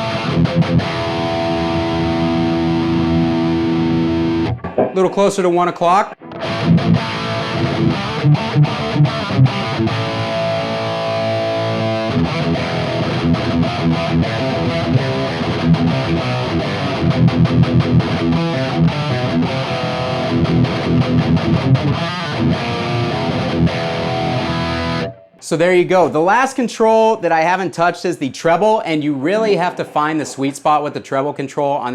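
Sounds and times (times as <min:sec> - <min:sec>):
distorted electric guitar chugging: 0:00.0 - 0:25.4.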